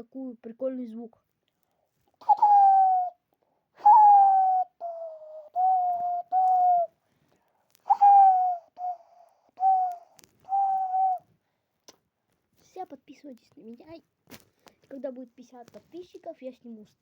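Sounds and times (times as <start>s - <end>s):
person whistling a tune: 2.2s - 3.1s, 3.8s - 6.9s, 7.8s - 11.2s.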